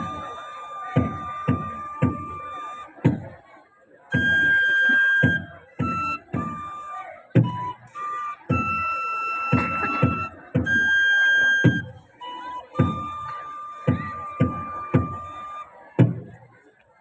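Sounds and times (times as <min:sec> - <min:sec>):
drum beat: 0:00.0 - 0:03.4, 0:04.1 - 0:16.4
flute ensemble melody: 0:00.0 - 0:03.4, 0:04.0 - 0:16.1.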